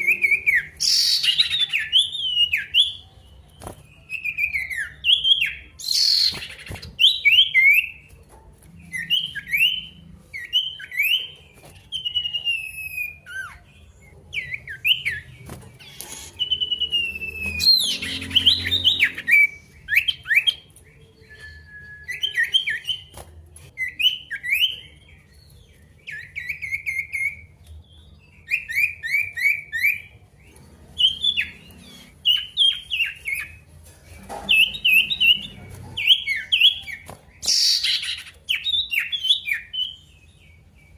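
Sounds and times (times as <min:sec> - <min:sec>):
songbird singing sharp chirps: 0:08.8 - 0:33.7.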